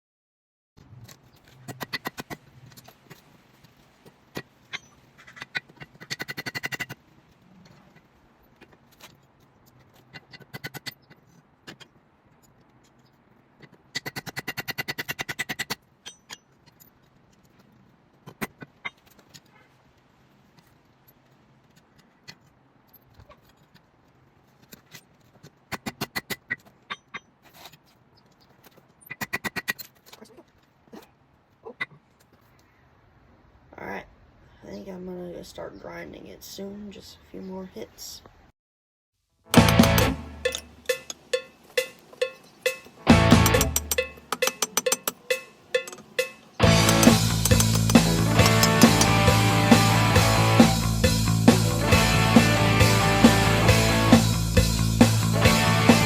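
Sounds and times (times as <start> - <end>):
hammer ringing on metal: 39.5 - 49.4.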